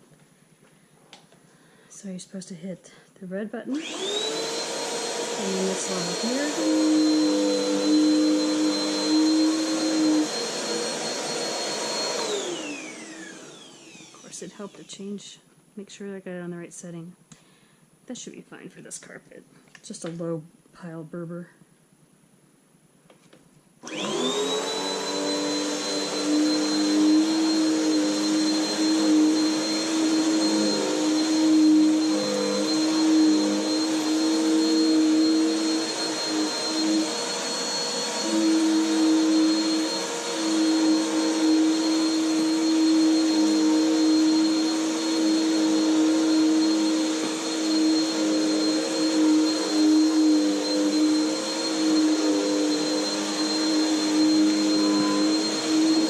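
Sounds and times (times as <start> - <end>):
vacuum cleaner motor whine: 3.7 - 14.9, 23.8 - 56.0.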